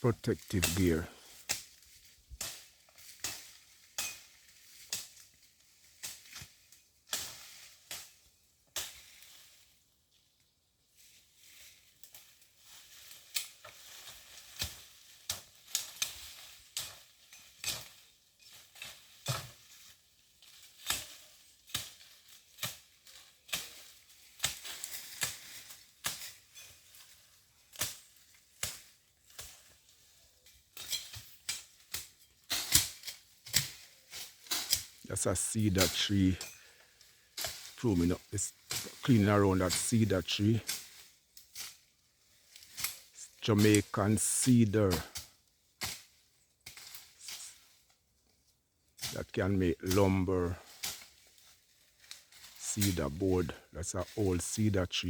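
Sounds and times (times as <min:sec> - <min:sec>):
rustling vegetation: 0:00.0 - 0:55.0
machete chopping brush: 0:30.8 - 0:36.3.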